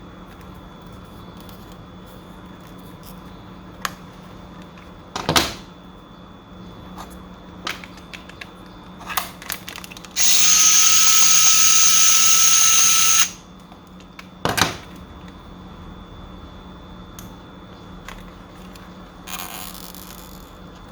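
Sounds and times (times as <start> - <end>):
handheld power tool whining hiss: 10.2 - 13.4.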